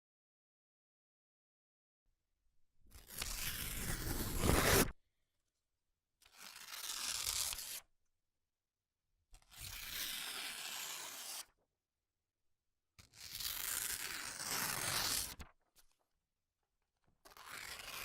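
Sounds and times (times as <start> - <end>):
paper tearing: 2.9 - 5.0, 6.2 - 7.8, 9.5 - 11.5, 13.0 - 15.5, 17.2 - 18.0.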